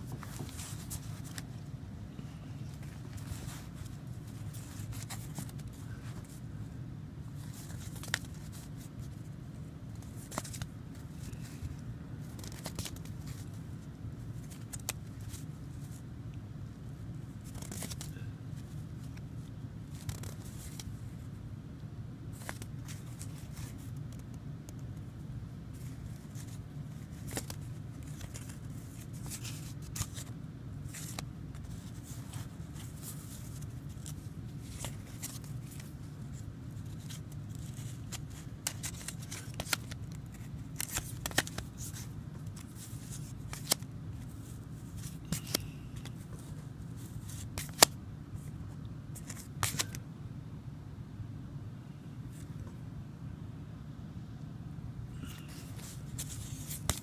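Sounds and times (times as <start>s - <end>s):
light clicks and paper rustles: 0.0s - 1.6s, 2.6s - 6.4s, 7.4s - 9.3s, 9.9s - 16.0s, 22.3s - 48.0s, 49.2s - 50.0s, 55.2s - 57.0s
steady low hum: 0.0s - 57.0s.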